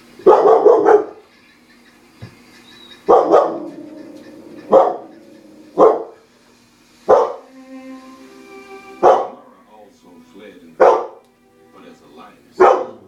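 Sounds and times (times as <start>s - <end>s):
dog barking: 0.2s - 1.2s, 3.0s - 6.2s, 7.1s - 7.4s, 9.0s - 9.4s, 10.8s - 11.2s, 12.6s - 13.0s.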